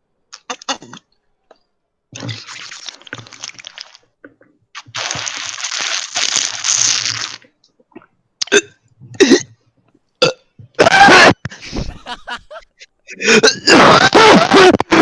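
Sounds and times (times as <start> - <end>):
person drinking water: 11.6 - 12.6.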